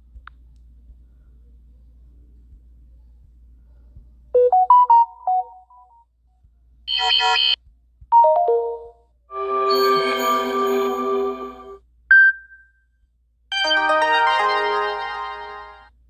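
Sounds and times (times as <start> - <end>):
phone alert tones: 6.9 - 7.6, 8.2 - 11.6.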